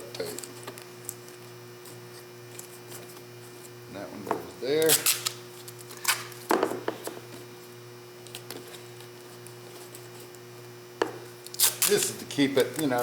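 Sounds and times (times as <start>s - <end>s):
steady low hum: 0.0s - 13.0s
tape rasp: 4.8s - 6.4s, 11.4s - 12.7s.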